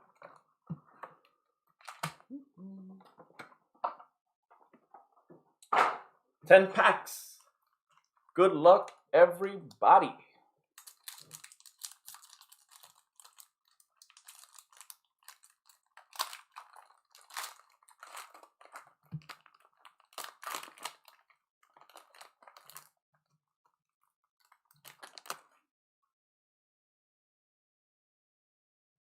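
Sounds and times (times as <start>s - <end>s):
foil wrappers crinkling and tearing: 10.8s - 23.0s, 24.4s - 25.6s.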